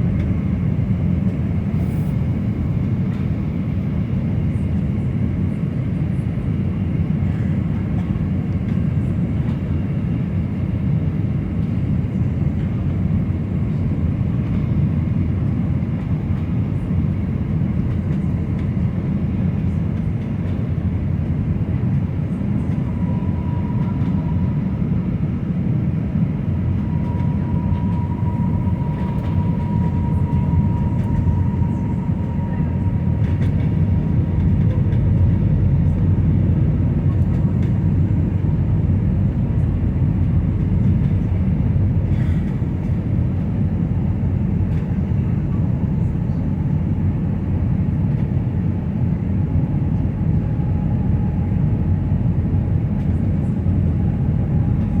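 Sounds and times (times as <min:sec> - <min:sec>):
airliner cabin rumble: 0:00.0 - 0:55.0.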